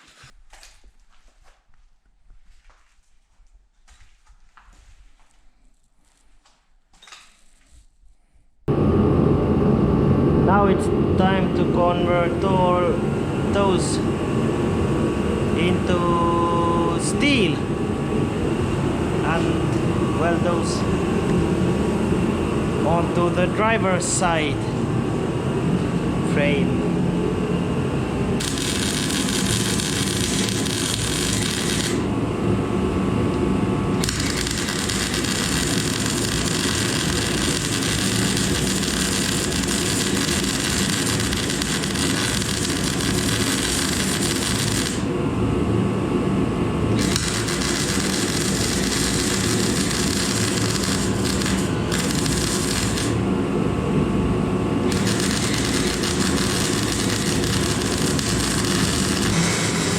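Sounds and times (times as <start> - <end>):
machine hum: 8.7 - 59.9
metalworking power tool hissing: 28.4 - 32.1, 34.0 - 45.1, 47.0 - 53.2, 54.9 - 59.9.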